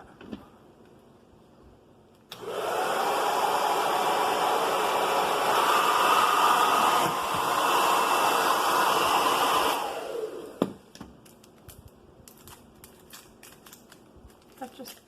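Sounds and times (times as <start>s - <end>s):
hair dryer blowing: 2.3s - 10.8s
plastic rustling: 10.9s - 15.0s.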